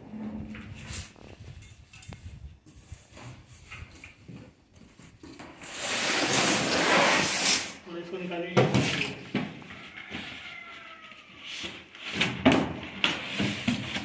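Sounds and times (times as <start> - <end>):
packaging rustling and scraping: 4.9 - 7.8, 9.9 - 14.0.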